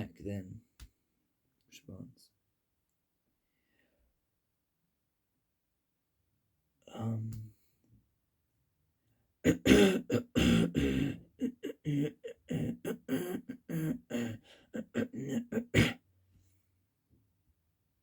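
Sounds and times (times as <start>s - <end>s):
person coughing: 9.5s - 16.0s.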